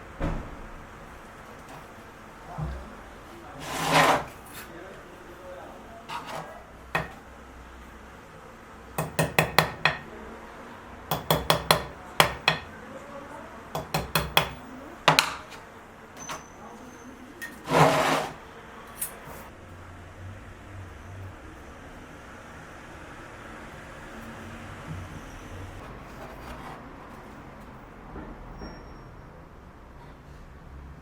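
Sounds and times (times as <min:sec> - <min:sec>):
tool scraping wood: 0:03.6 - 0:04.8, 0:06.0 - 0:07.2, 0:17.4 - 0:18.4, 0:25.8 - 0:27.3
small hammer tapping wood: 0:07.0 - 0:07.2, 0:09.0 - 0:10.0, 0:11.1 - 0:12.7, 0:13.8 - 0:15.6.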